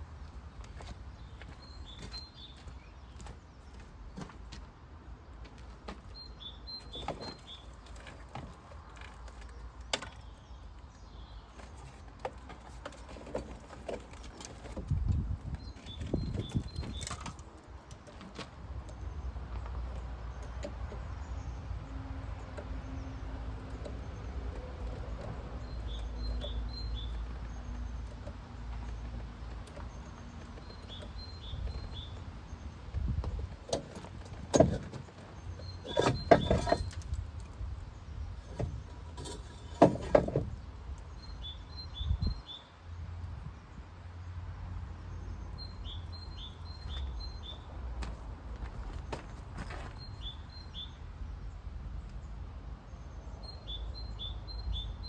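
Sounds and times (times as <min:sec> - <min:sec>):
bird chirping: 0:25.6 - 0:28.3, 0:52.9 - 0:55.0.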